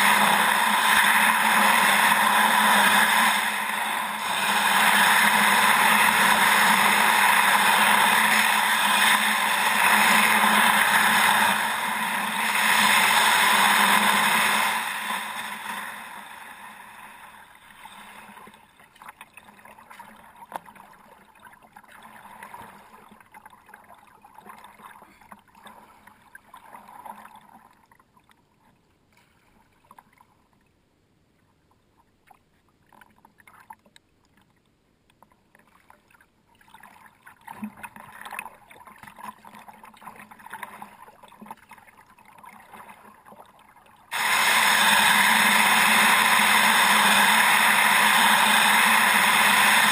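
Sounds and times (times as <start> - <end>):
loud steady rush of noise: 0.0 - 17.4, 44.1 - 49.9.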